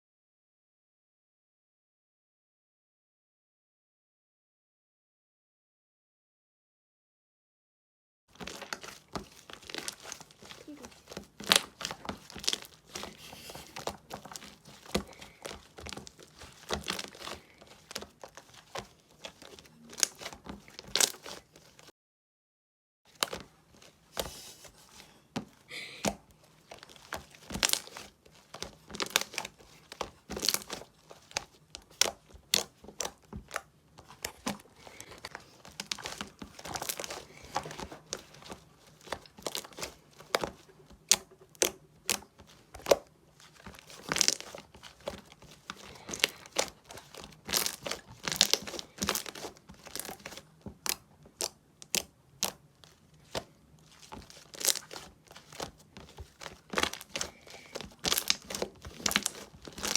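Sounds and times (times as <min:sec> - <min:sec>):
slime squished by hand: 0:08.4 - 0:21.9, 0:26.0 - 0:59.9.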